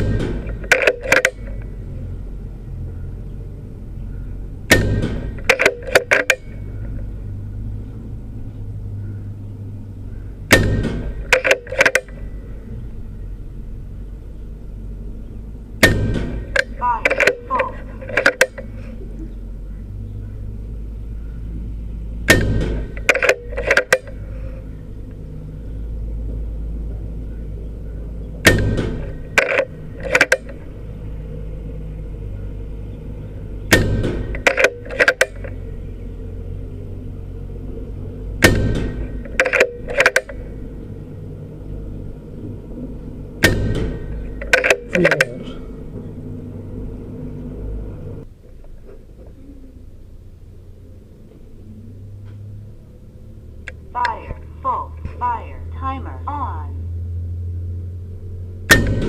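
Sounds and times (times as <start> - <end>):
air rifle shots: 0.0 - 1.7, 4.6 - 7.0, 10.4 - 12.3, 15.8 - 18.8, 22.2 - 24.6, 28.4 - 30.8, 33.6 - 35.6, 38.4 - 40.6, 43.4 - 45.6, 58.7 - 59.0
steady low hum: 0.0 - 59.0
rifle lever clicks: 0.4 - 1.7, 4.7 - 7.0, 11.2 - 12.2, 16.5 - 18.7, 23.0 - 24.2, 28.5 - 30.6, 33.7 - 35.6, 38.4 - 40.4, 43.4 - 45.4.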